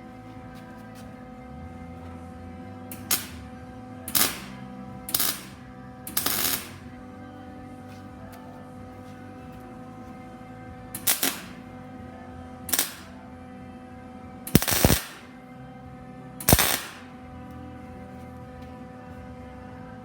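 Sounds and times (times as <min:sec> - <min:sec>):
steady welder hum: 0:00.0 - 0:19.8
welding arc crackle: 0:02.9 - 0:03.5, 0:04.1 - 0:06.8, 0:11.0 - 0:11.7, 0:12.7 - 0:13.2, 0:14.5 - 0:15.4, 0:16.4 - 0:17.1.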